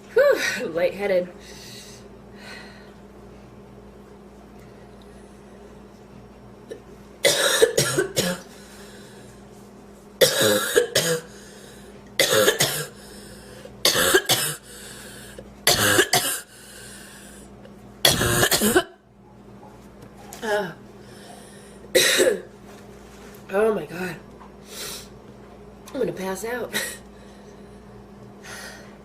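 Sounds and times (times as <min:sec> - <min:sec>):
woman coughing: 0:07.2 - 0:08.5, 0:10.2 - 0:11.3, 0:12.2 - 0:13.0, 0:13.8 - 0:14.6, 0:15.7 - 0:16.5, 0:18.0 - 0:19.0, 0:21.9 - 0:22.5, 0:26.7 - 0:27.0.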